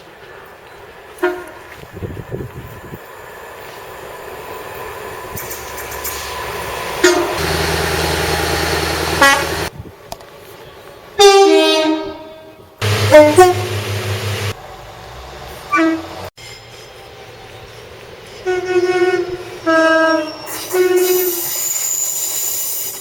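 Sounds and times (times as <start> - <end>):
passing train running noise: 0.0 - 23.0
train horn blasts: 1.2 - 1.7, 7.0 - 9.7, 11.2 - 14.6, 15.7 - 16.3, 18.4 - 21.4.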